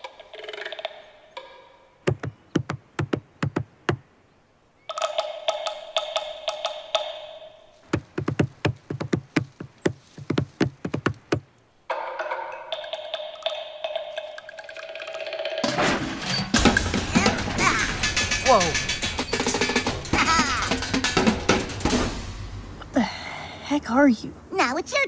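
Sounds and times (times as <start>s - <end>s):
cartoon woodpecker knocking: 0.0s - 4.2s, 4.9s - 15.9s, 16.5s - 22.2s
music with percussion: 11.9s - 15.8s, 16.4s - 22.6s.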